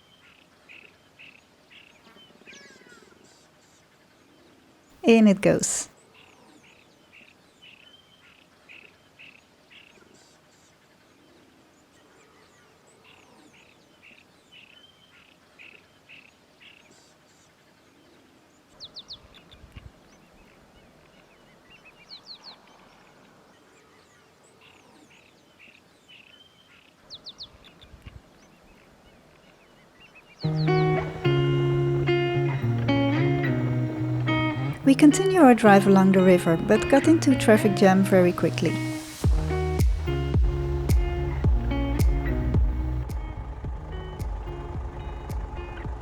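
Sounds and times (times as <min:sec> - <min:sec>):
birds calling: 0:30.3 - 0:46.0.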